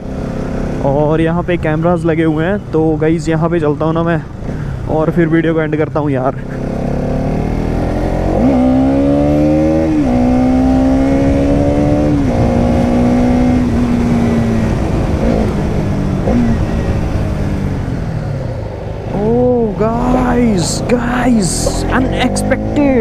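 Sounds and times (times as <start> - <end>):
motorcycle engine revving: 6.4 - 23.0.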